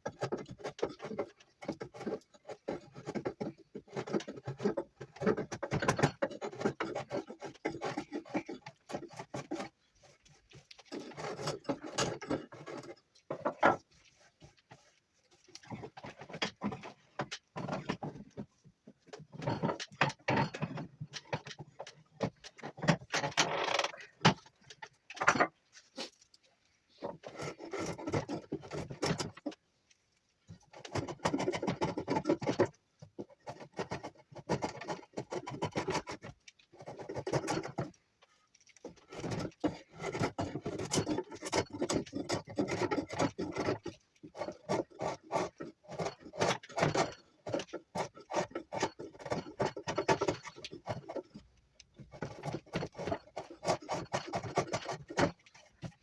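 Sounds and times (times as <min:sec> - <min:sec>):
knife whittling wood: 0:52.1 - 0:55.9.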